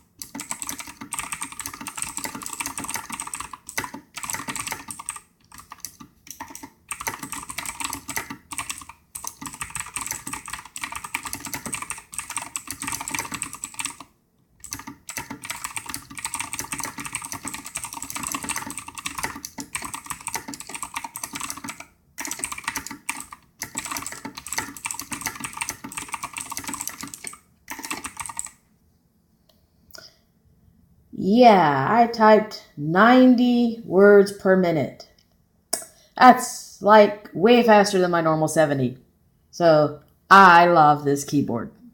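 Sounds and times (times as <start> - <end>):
mechanical keyboard typing: 0.0 - 28.6.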